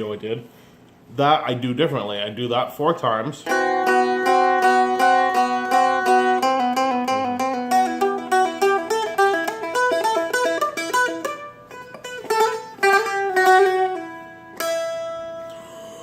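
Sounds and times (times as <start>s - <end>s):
plucked dulcimer melody: 3.5s - 15.6s.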